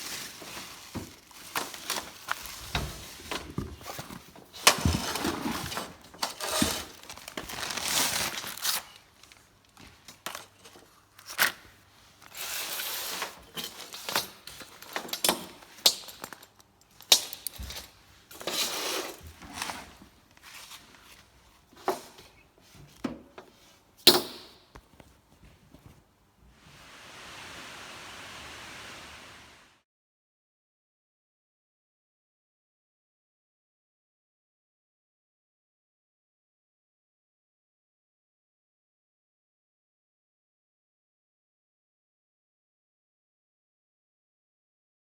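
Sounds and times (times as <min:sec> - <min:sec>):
rustling scrapes: 0:00.0 - 0:11.4, 0:12.0 - 0:15.7, 0:17.5 - 0:22.9, 0:24.8 - 0:29.8.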